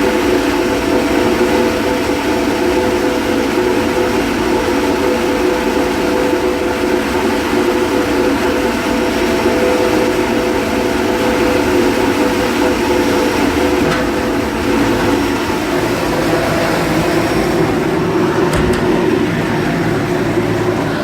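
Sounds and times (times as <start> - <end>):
machine humming: 6.6 - 21.0.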